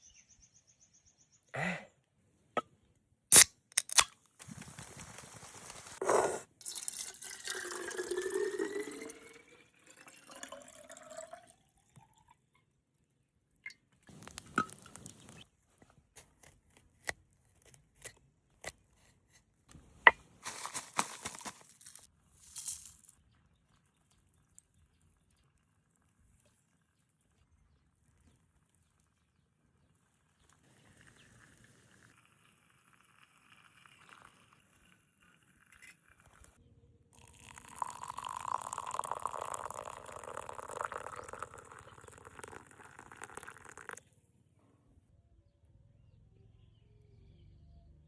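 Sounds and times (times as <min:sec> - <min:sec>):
liquid pouring into container: 0:06.6 - 0:12.4, 0:30.4 - 0:36.5, 0:37.2 - 0:44.0.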